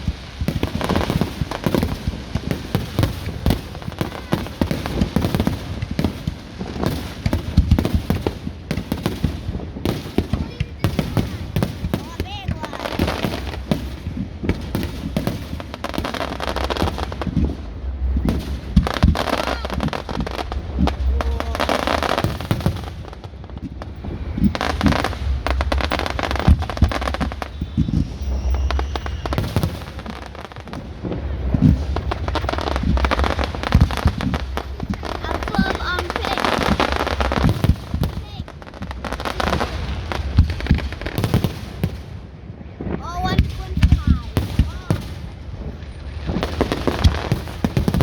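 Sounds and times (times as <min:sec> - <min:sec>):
fireworks bangs and crackles: 0:00.0 - 0:48.0
low rumble: 0:12.9 - 0:43.0.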